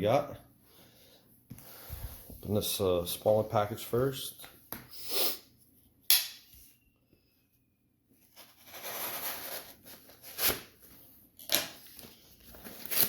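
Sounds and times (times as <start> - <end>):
packaging tearing and rustling: 8.5 - 10.7, 11.5 - 13.0.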